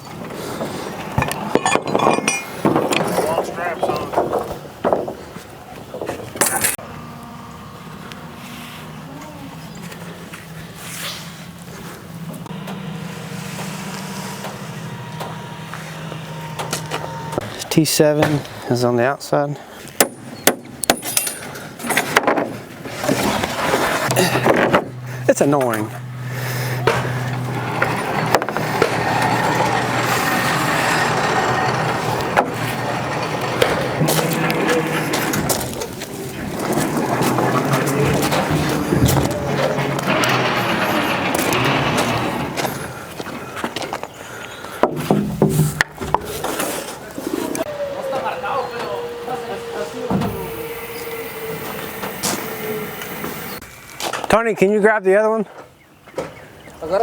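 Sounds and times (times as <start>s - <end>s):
sharp knocks and clatter: 1.2s - 5.3s, 26.9s - 43.9s
large engine running: 11.5s - 17.6s, 24.0s - 43.8s, 47.1s - 53.6s.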